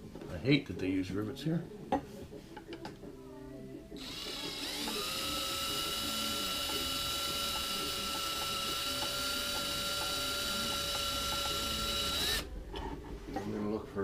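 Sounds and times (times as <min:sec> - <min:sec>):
electric drill whining: 0:04.0 - 0:12.5.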